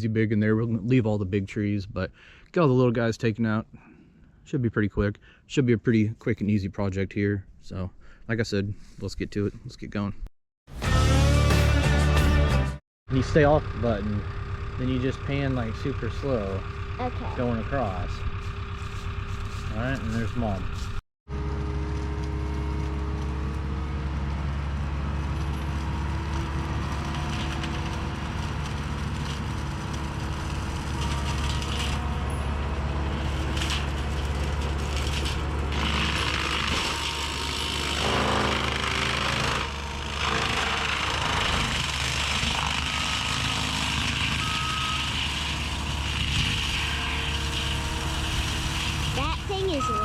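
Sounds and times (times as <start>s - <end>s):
heavy machine engine running: 13.1s - 50.0s.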